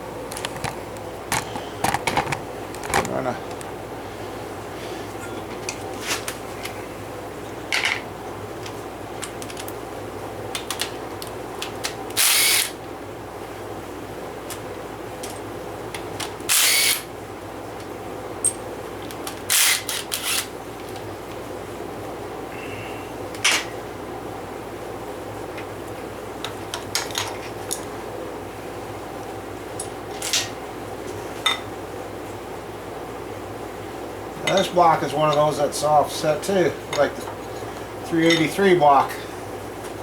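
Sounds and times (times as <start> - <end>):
power tool running in bursts: 12.2 - 12.8, 16.5 - 17.1.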